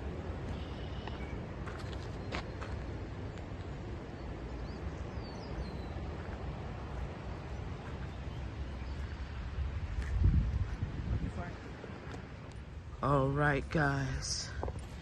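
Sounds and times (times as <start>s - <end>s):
faint bird chirps: 0.5s - 1.4s.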